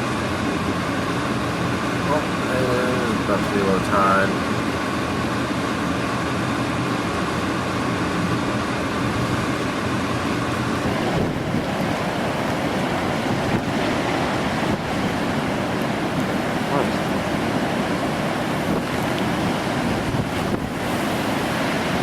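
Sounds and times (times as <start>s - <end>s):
rush of surf and water: 0.0s - 22.0s
strong wind buffeting microphone: 9.0s - 22.0s.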